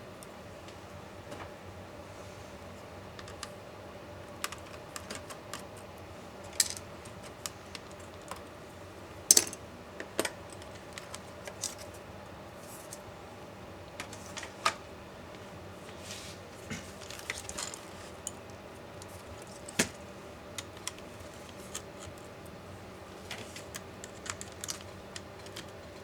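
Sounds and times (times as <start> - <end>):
small parts and tools clicking: 4.4 - 8.5, 9.3 - 11.9, 23.3 - 26.0.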